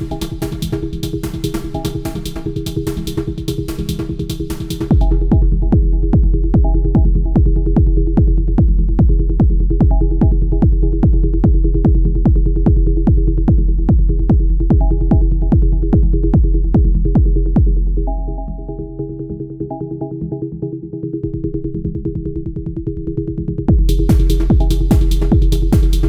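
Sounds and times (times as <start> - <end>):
kick drum: 0.0 - 18.1, 23.7 - 26.0.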